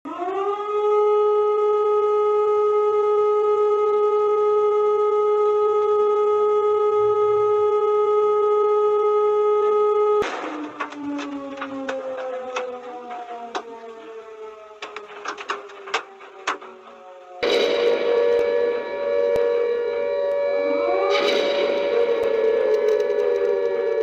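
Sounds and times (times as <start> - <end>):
steady electronic alarm tone: 11.0 - 24.0.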